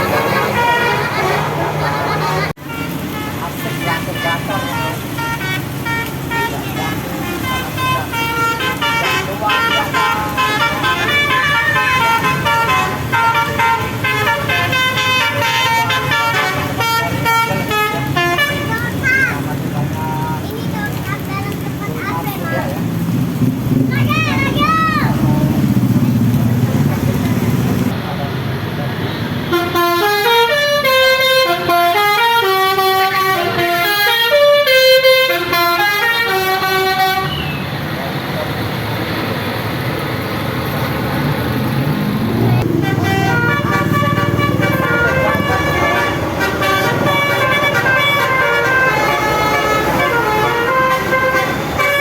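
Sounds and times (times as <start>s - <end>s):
bus air horn playing a tune: 0.0s - 1.8s, 2.6s - 18.8s, 29.5s - 37.4s, 42.6s - 52.0s
bus rumbling past: 0.0s - 3.6s, 18.1s - 31.2s, 36.5s - 52.0s
musical air horn tune: 42.6s - 52.0s.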